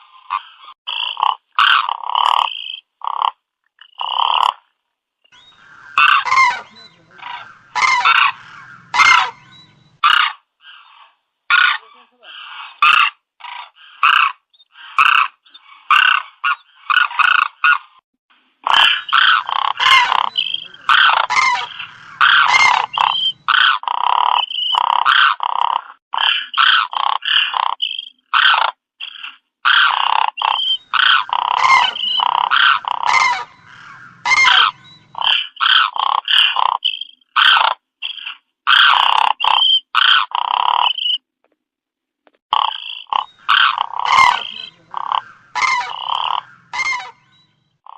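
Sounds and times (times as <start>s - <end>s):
cranes calling: 5.4s - 11.8s, 12.4s - 17.8s, 18.7s - 25.6s, 26.2s - 27.5s, 28.4s - 41.2s, 42.6s - 47.9s.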